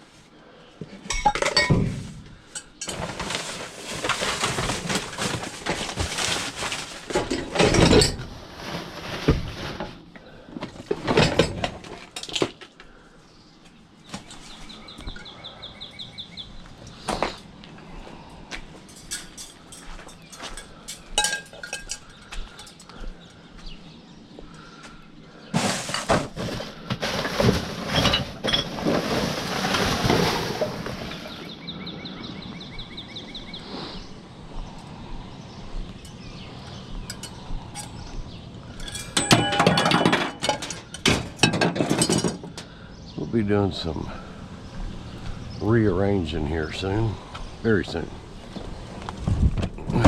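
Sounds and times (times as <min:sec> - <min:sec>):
scrap items clinking and clattering: 0:00.9 - 0:12.8, 0:18.8 - 0:22.9, 0:25.4 - 0:31.5, 0:38.7 - 0:42.7
rattling: 0:38.7 - 0:42.7.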